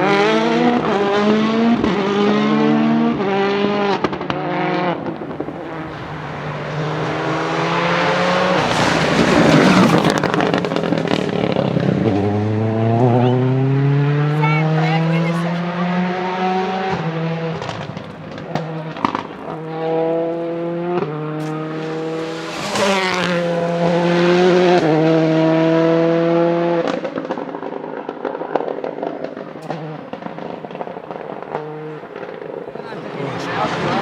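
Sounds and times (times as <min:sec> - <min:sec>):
rally car engine under load: 0:00.0 - 0:34.0
anti-lag pops and crackles: 0:26.8 - 0:32.6.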